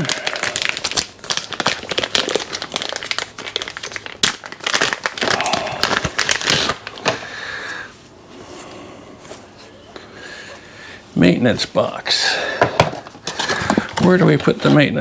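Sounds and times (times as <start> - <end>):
packaging crinkling and rustling: 0.0 - 7.3, 12.7 - 14.9.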